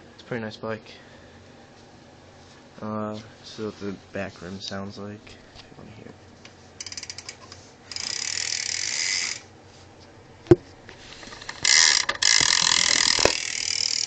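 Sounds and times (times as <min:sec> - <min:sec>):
bicycle hub ratcheting buzz: 0:06.8 - 0:09.5, 0:11.0 - 0:14.0.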